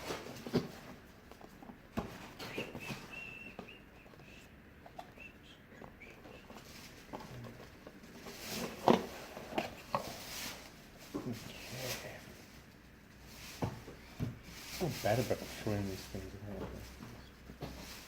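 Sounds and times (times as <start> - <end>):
packaging rustling and crinkling: 6.3 - 17.0.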